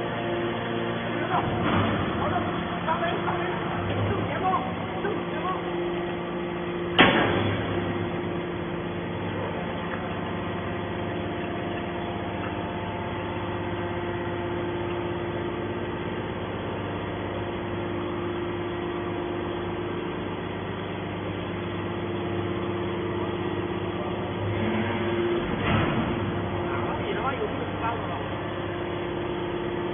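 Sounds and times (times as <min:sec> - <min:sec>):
hydraulic power unit humming: 0:00.0 - 0:29.9.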